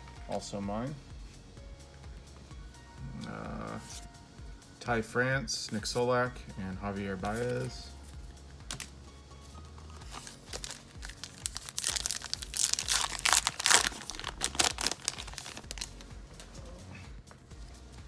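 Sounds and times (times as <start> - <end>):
foil wrapper tearing and crinkling: 8.7 - 8.9, 10.0 - 16.0.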